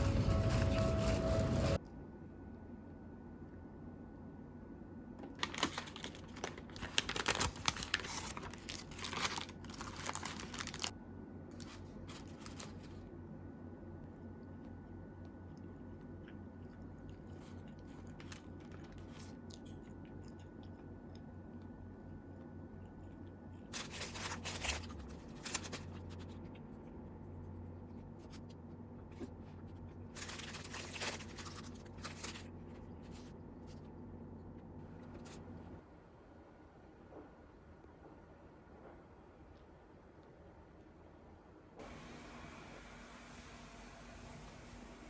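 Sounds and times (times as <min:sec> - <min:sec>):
steady low hum: 0:00.0 - 0:45.0
crinkling or rustling: 0:05.2 - 0:10.9, 0:11.6 - 0:13.1, 0:17.2 - 0:20.0, 0:23.7 - 0:26.5, 0:28.3 - 0:33.9.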